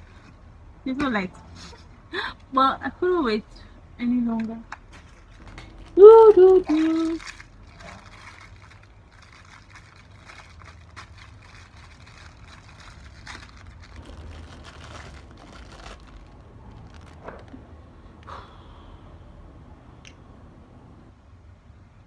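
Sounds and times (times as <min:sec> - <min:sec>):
packaging rustling: 0:04.9 - 0:17.6.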